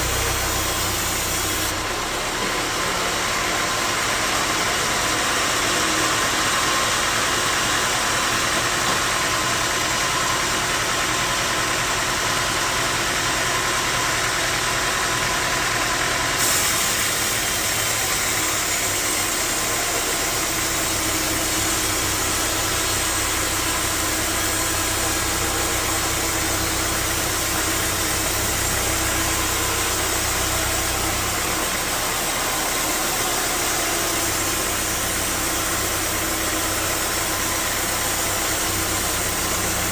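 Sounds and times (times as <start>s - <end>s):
deep hum: 0.0s - 2.4s, 19.4s - 39.9s
sawmill machinery drone: 0.0s - 39.9s.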